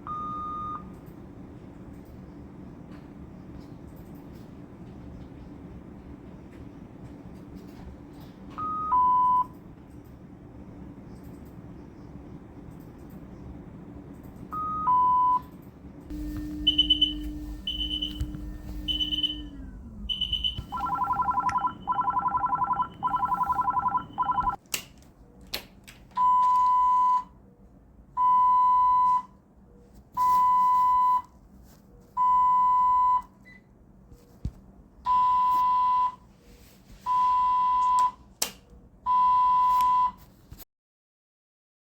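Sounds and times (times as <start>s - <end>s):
falling two-note alarm tone: 16.1s - 24.6s
high alarm beeps: 16.1s - 24.6s
pulsing warbling alarm tone: 16.1s - 24.6s
repeating one-second beep: 16.4s - 24.6s.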